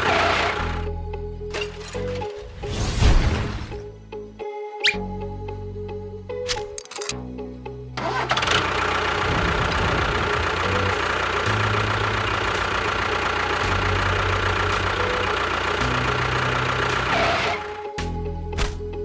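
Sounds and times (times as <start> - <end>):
motor running steadily: 8.3 - 18.0.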